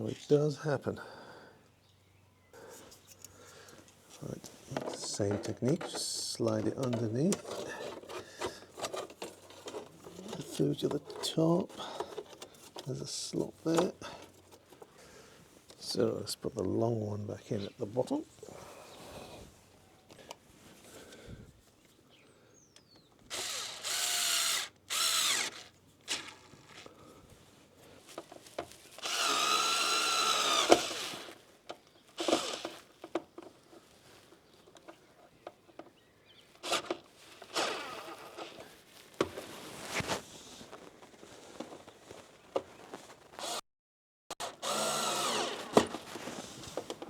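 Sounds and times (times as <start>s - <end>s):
clicks and knocks of parts: 2.9s - 13.0s
power drill whirring: 23.3s - 26.9s, 29.0s - 31.4s, 32.2s - 32.8s, 36.6s - 38.6s, 43.4s - 43.6s, 44.4s - 46.1s.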